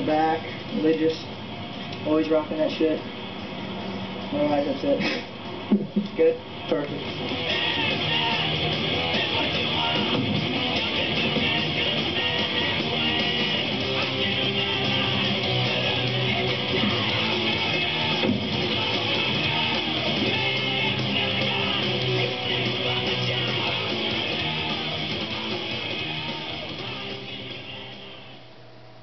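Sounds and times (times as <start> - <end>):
strummed electric guitar music: 6.8 - 28.2.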